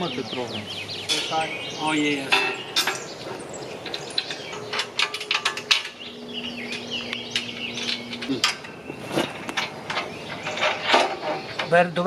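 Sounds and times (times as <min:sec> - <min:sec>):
low steady hum: 0:00.0 - 0:12.0
metal parts and tools clinking: 0:02.3 - 0:11.8.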